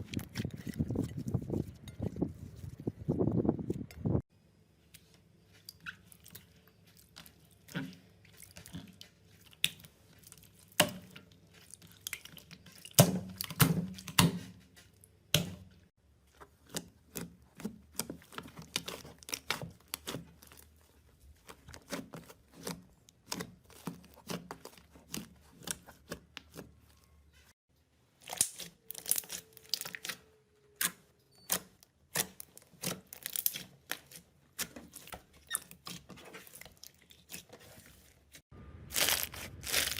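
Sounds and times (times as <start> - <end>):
slime squishing and crackling: 5.5 - 14.2, 16.2 - 27.0, 28.2 - 39.9.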